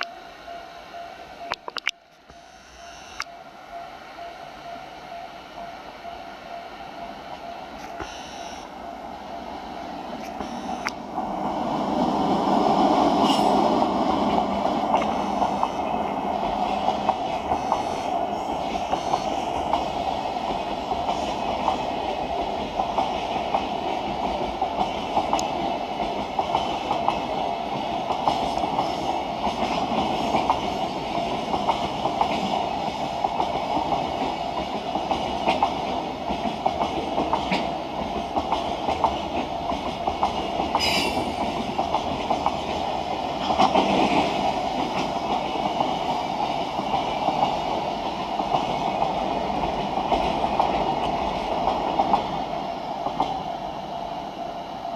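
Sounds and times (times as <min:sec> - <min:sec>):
electric locomotive passing: 0:00.0 - 0:54.9
train wheels clacking over rail joints: 0:13.2 - 0:52.4.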